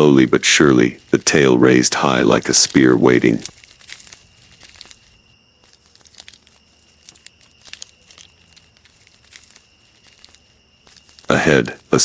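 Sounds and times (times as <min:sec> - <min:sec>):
dry rustling and crinkling: 0:00.0 - 0:12.0
faint high-pitched tone: 0:00.0 - 0:12.0
small ticks and crackles: 0:00.0 - 0:12.0.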